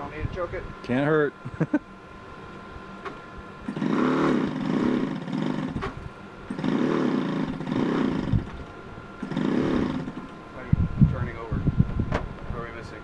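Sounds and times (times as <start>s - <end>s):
engine starter cranking whine: 3.6s - 10.4s.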